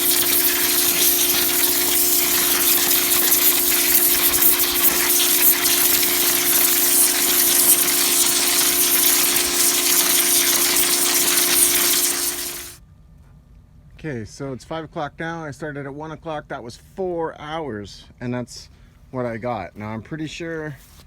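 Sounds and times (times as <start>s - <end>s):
pressure washer water jet hissing: 0.0s - 12.8s
pump humming: 0.0s - 12.8s.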